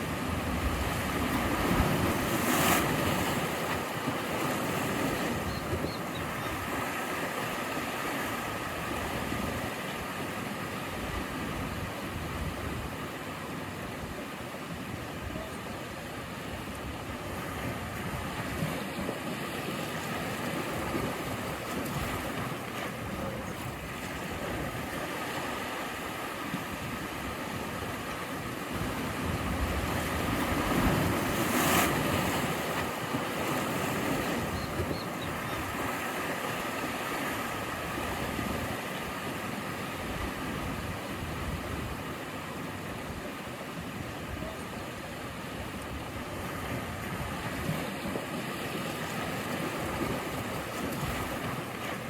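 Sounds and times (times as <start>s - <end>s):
sea waves breaking on shore: 0.0s - 52.0s.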